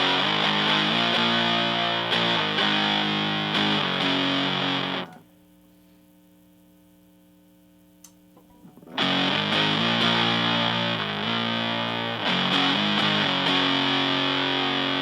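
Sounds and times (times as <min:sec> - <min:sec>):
fuzzed electric guitar chords: 0:00.0 - 0:05.2, 0:08.6 - 0:15.0
mains hum: 0:00.0 - 0:15.0
small click: 0:08.0 - 0:08.5.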